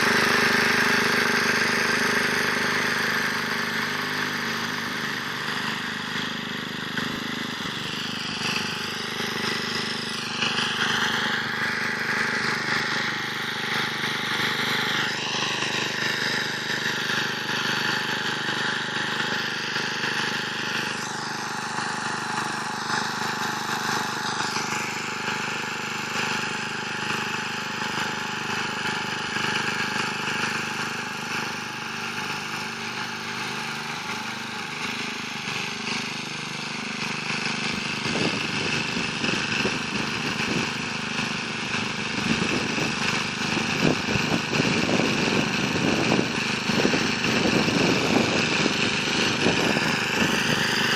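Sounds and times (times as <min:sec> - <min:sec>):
rotary tiller milling soil: 0:00.0 - 0:50.9
small engine running: 0:00.0 - 0:50.9.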